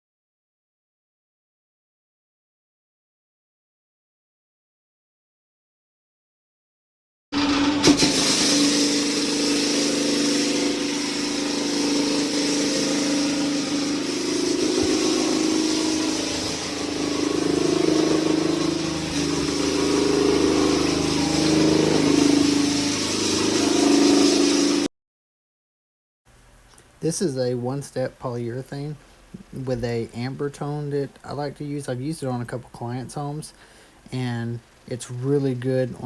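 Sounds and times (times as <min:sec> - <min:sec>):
machine humming with hiss: 0:07.4 - 0:24.9.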